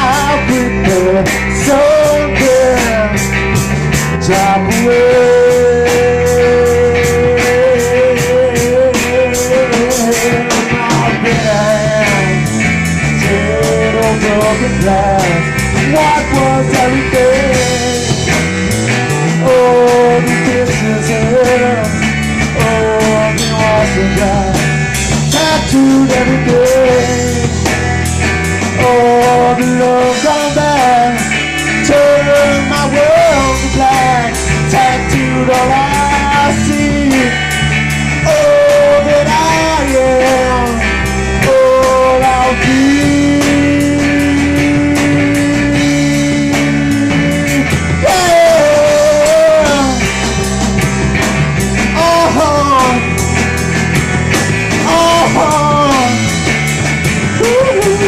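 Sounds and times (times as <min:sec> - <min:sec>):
gliding melodic lead line: 0:00.0 - 0:58.0
rock band playing: 0:00.0 - 0:58.0.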